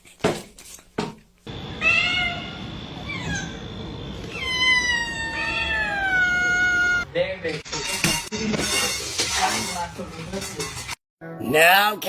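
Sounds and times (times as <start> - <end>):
cat meowing: 1.8 - 3.6, 4.2 - 7.1.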